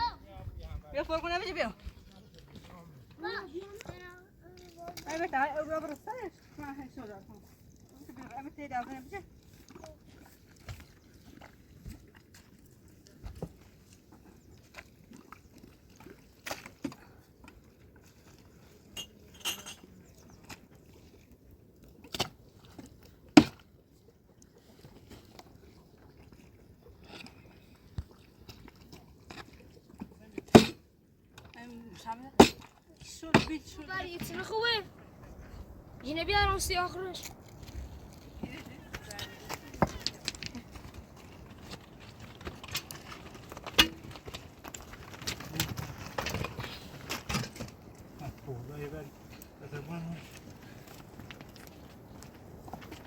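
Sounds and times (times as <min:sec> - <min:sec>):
knocks and clatter of building work: 0:39.5 - 0:48.4.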